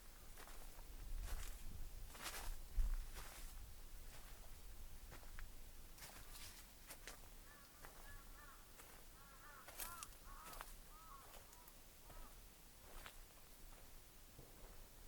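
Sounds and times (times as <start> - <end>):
footsteps on dry leaves: 1.2 - 5.4, 6.0 - 7.2, 8.8 - 11.5
bird calling: 7.4 - 12.4.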